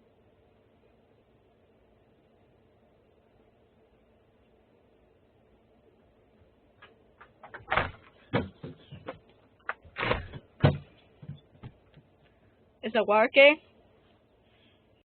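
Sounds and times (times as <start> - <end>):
irregular knocks and clatters: 6.8 - 12.2.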